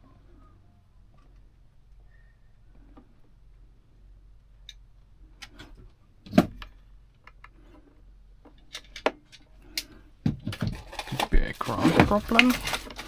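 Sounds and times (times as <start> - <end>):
faint low hum: 0.0 - 13.0
clicks and taps of wiring: 8.4 - 11.4, 12.1 - 13.0.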